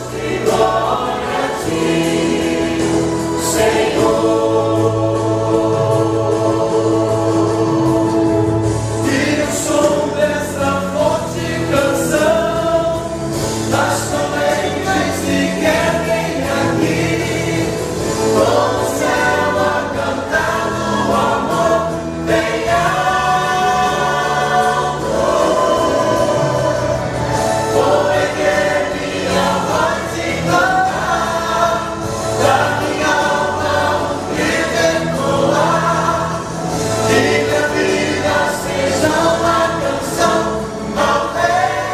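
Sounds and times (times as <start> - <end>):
choir singing gospel: 0.0 - 41.9
male soloist singing: 0.0 - 41.9
musical accompaniment: 0.0 - 41.9.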